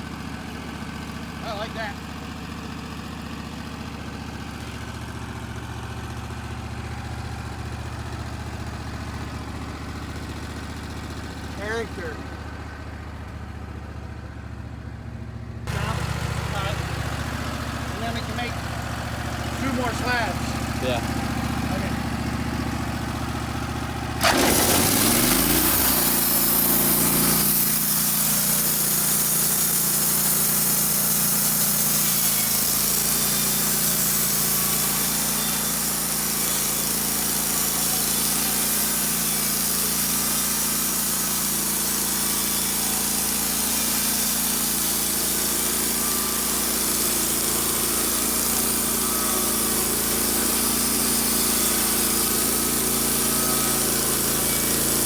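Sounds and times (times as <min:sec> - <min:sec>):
sawmill engine revving: 0:00.0 - 0:55.0
bandsaw blade sawing log: 0:01.4 - 0:02.0, 0:11.4 - 0:12.2, 0:17.8 - 0:18.6, 0:19.3 - 0:22.7, 0:24.1 - 0:55.0.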